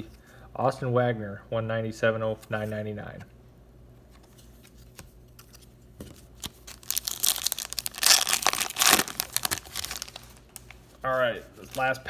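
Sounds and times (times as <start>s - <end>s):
wrapper torn open and crinkled: 6.4s - 10.8s.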